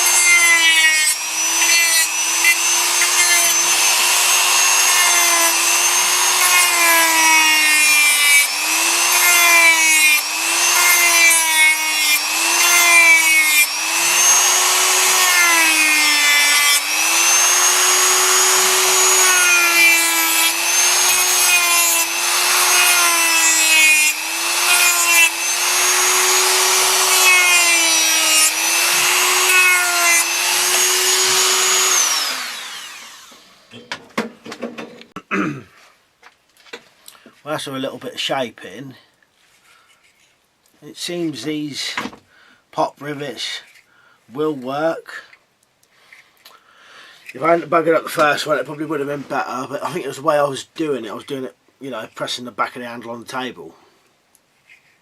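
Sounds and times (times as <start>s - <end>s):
plastic grinding rasp: 0.0s - 33.4s
power tool motor whine: 0.0s - 33.8s.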